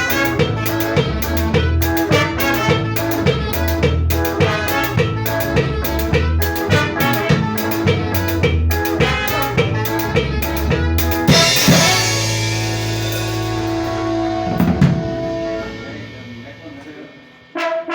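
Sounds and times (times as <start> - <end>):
band rehearsing: 0.0 - 17.9
drum kit steady beat: 0.0 - 17.9
cymbal crash: 11.3 - 17.9.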